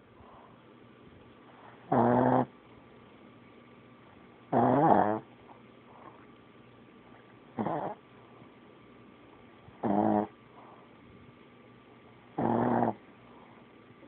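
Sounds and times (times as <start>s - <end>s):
pet snoring: 1.5s - 2.5s, 4.5s - 5.3s, 7.6s - 8.0s, 9.7s - 10.8s, 12.3s - 13.6s.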